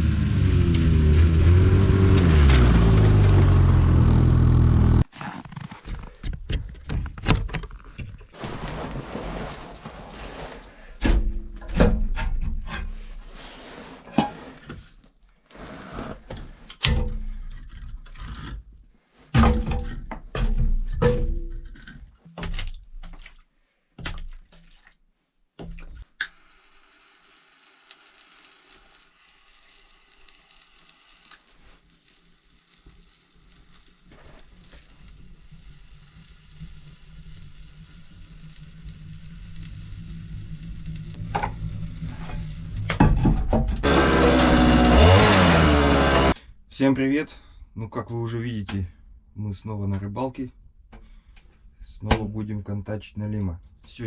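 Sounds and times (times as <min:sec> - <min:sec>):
motor running: 0:00.0 - 0:05.0, 0:43.8 - 0:46.4
knocks thunks and scraping: 0:00.7 - 0:13.0, 0:42.9 - 0:46.3.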